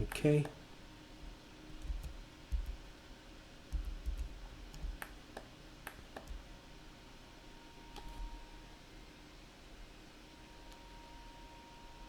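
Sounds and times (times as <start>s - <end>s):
mouse and keyboard clicks: 1.7s - 2.8s, 3.7s - 5.2s, 5.9s - 6.4s
soft low thumps: 1.8s - 2.8s, 3.7s - 5.1s.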